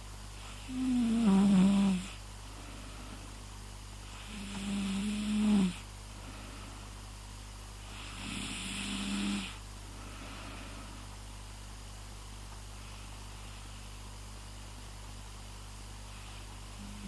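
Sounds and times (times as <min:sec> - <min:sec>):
person snoring: 0:00.5 - 0:02.2, 0:04.1 - 0:05.8, 0:07.9 - 0:11.0.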